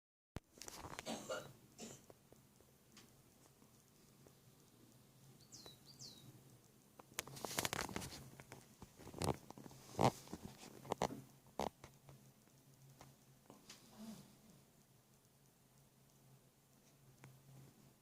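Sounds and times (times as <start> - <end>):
woman coughing phlegmy: 1.0 - 2.0.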